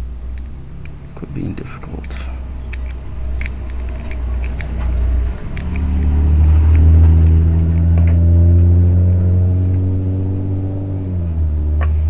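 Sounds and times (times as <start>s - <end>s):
low motor hum: 0.0s - 12.0s.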